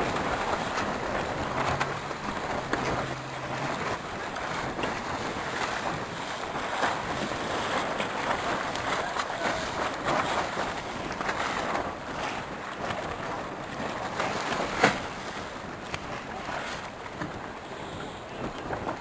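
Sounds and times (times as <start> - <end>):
water splashing against boat hull: 0.0 - 19.0
wind buffeting microphone: 0.0 - 19.0.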